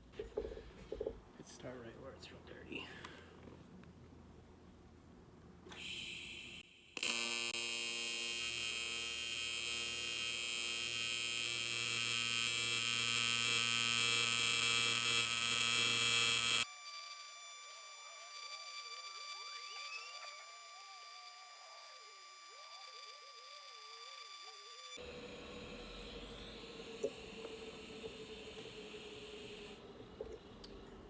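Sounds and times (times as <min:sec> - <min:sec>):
welding arc starting hiss: 0:05.7 - 0:16.7, 0:24.3 - 0:29.8
welding arc electric buzz: 0:05.7 - 0:29.8.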